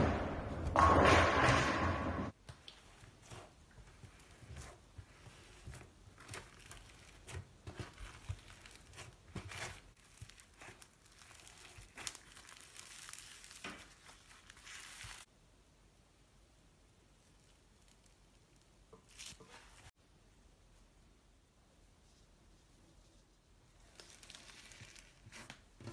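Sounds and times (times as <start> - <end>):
slime squished by hand: 2.6 - 15.3.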